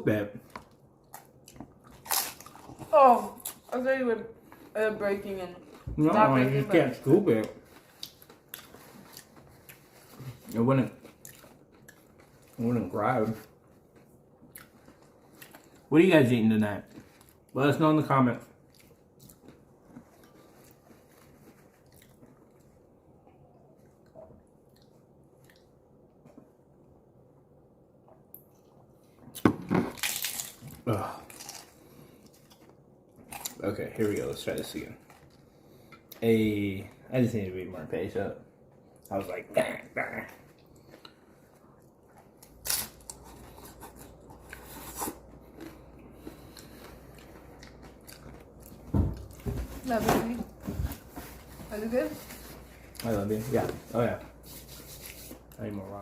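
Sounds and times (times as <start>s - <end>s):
chewing with crunches: 0.4s - 3.7s, 7.0s - 15.9s, 18.5s - 26.4s, 28.1s - 36.2s, 40.2s - 49.5s.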